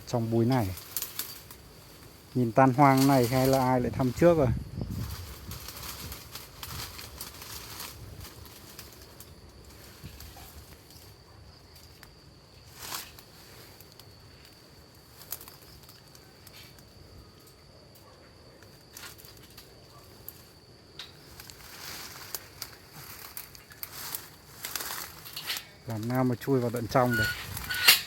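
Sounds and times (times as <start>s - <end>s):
dry brush crackling and rustling: 0.0s - 17.6s, 18.6s - 28.0s
high-pitched insect drone: 0.0s - 28.0s
twigs snapping: 0.4s - 4.4s, 5.0s - 11.1s, 12.8s - 16.9s, 18.7s - 26.8s.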